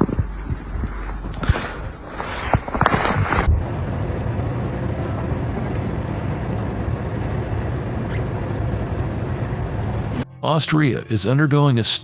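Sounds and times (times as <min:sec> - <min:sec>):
road and wind noise: 0:00.0 - 0:10.2
vehicle engine drone: 0:00.0 - 0:10.3.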